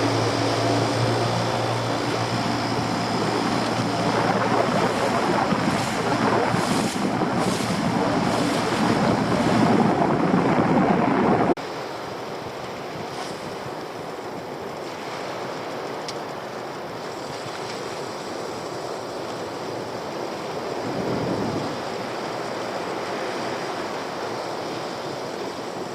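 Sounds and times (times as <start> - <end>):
sea water sloshing around boat: 0.0 - 11.6
wind buffeting microphone: 0.0 - 11.6, 19.7 - 25.9.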